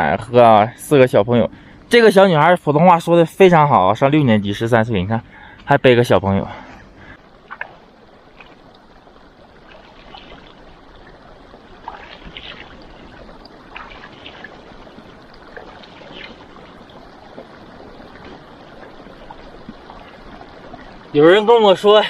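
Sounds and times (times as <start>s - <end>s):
small water splashes: 7.0s - 22.0s
water running and trickling: 7.0s - 22.0s.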